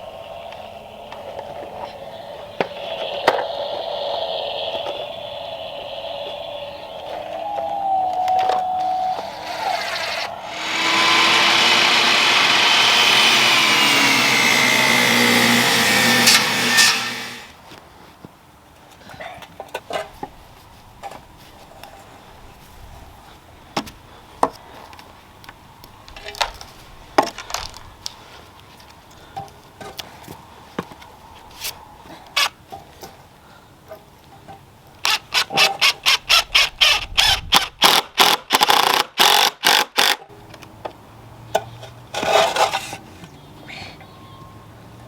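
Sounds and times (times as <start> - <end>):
fast scraping strokes on wood: 9.4 - 17.6.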